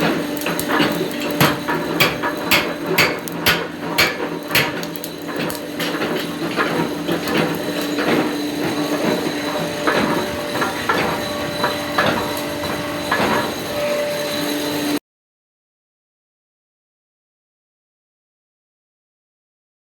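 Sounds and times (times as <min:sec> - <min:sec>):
hammer striking metal: 0:00.0 - 0:14.9
steady machine hum: 0:00.0 - 0:15.0.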